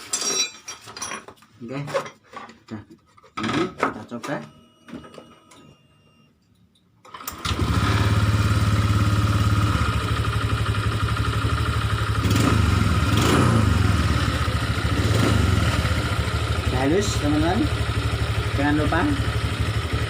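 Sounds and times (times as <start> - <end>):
scooter engine idling: 7.4 - 20.0.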